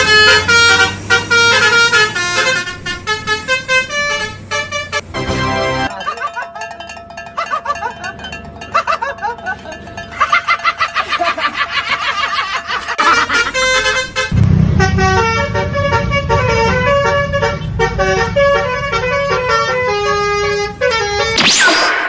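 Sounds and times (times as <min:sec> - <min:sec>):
musical bus horn: 0:00.0 - 0:05.9, 0:12.7 - 0:21.4
steady low rumble: 0:13.6 - 0:21.0.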